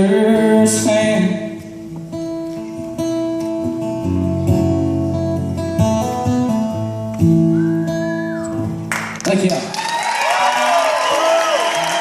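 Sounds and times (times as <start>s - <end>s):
acoustic guitar strumming chords: 0.0s - 9.2s.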